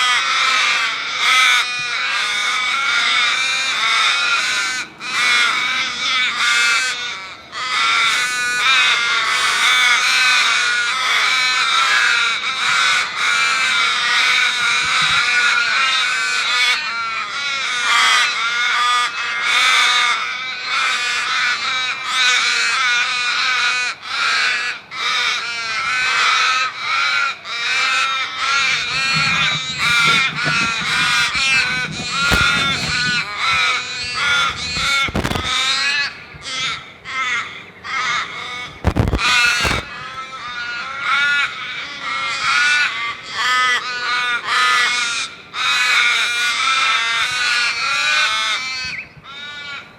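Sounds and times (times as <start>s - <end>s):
crows cawing: 0.0s - 49.9s
sharp knocks: 28.6s - 35.7s.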